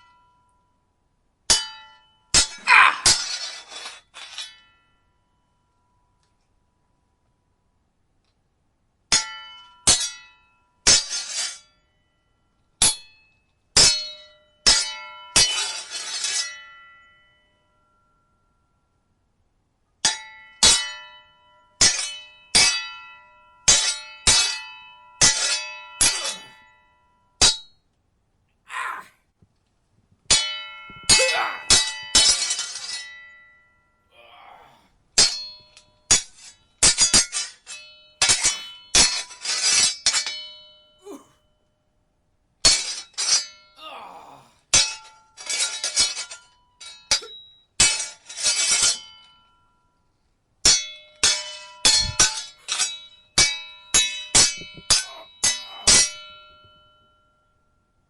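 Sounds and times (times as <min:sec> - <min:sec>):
metal sword blades clashing: 0:31.1 - 0:31.8, 0:38.3 - 0:38.8.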